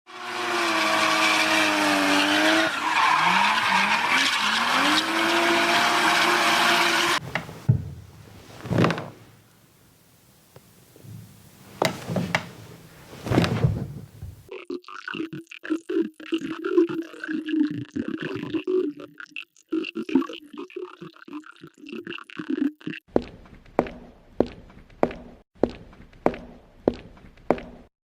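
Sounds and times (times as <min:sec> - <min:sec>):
engine with shifting pitch: 0:00.1 - 0:07.2
tyre squeal: 0:00.7 - 0:07.7.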